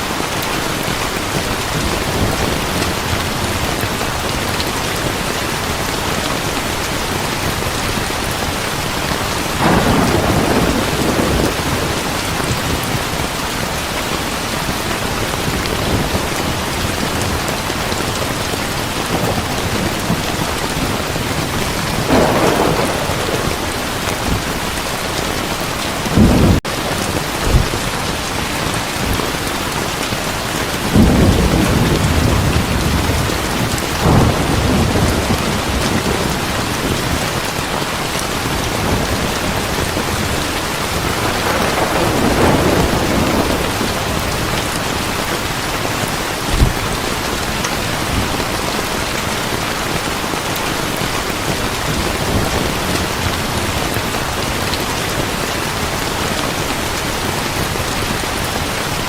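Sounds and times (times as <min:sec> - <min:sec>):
thunder rumbling: 0:00.0 - 0:50.0
heavy rain falling: 0:00.0 - 0:59.0
sharp thunder crack: 0:09.6 - 0:12.7, 0:21.4 - 0:24.7, 0:30.9 - 0:37.0, 0:41.1 - 0:44.8.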